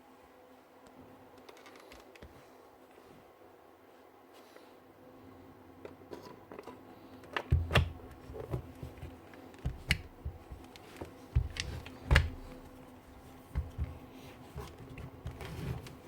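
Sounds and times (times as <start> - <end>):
hard parts clicking and knocking: 5.9 - 12.6.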